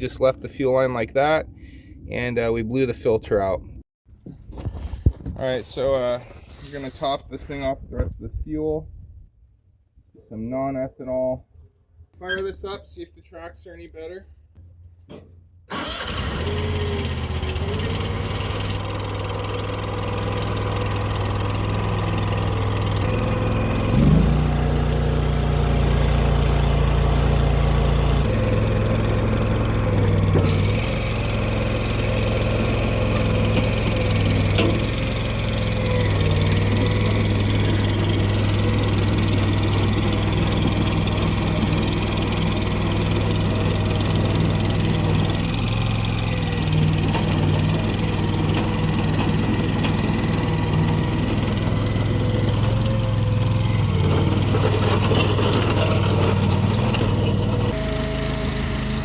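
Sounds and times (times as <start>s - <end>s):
crawler dozer engine running: 15.7s - 59.0s.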